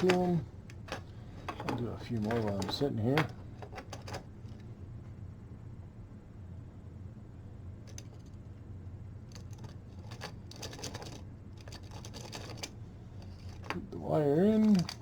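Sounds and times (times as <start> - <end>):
low steady hum: 0.0 - 15.0
small plastic clicks and rattles: 9.3 - 13.8, 14.6 - 15.0.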